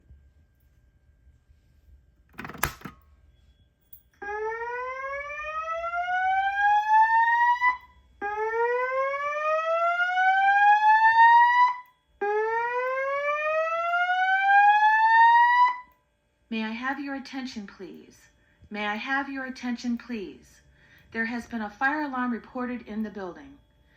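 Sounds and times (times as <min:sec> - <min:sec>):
whooping fire alarm tone: 0:03.4 - 0:16.0.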